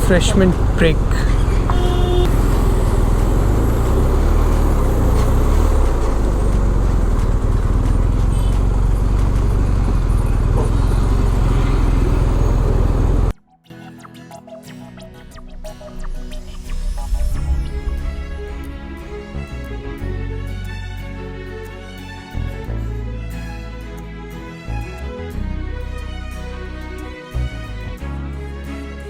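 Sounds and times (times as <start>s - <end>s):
motorcycle engine: 0.0s - 13.4s
wind and road noise: 0.0s - 13.4s.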